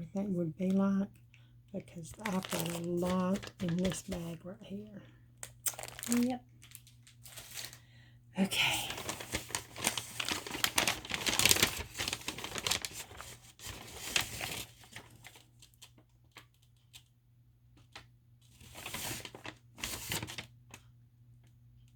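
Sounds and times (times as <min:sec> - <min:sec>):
shopping bag crinkling and rustling: 0:01.9 - 0:04.4, 0:05.6 - 0:07.9, 0:08.7 - 0:17.1, 0:18.5 - 0:20.5.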